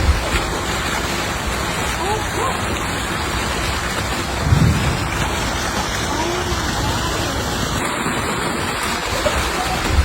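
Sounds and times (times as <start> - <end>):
low buffeting thump: 4.4 - 5.8
wind rushing over microphone: 4.4 - 5.8.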